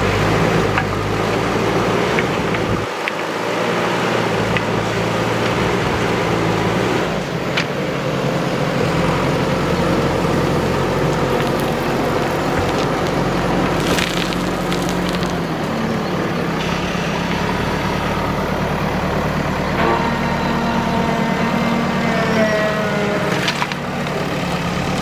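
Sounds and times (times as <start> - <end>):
heavy diesel engine running: 0.0 - 25.0.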